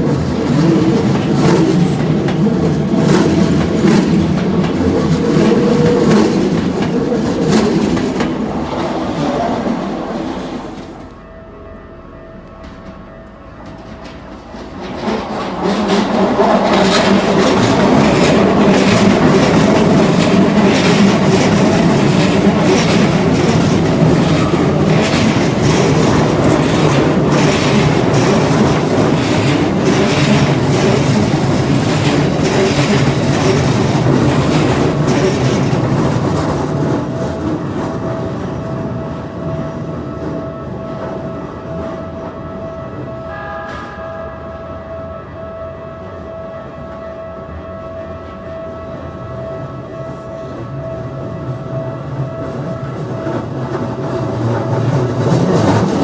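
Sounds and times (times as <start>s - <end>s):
train wheels clicking over rail joints: 0.0s - 11.2s, 13.6s - 40.4s, 52.4s - 56.0s
level crossing warning bell: 0.0s - 56.0s.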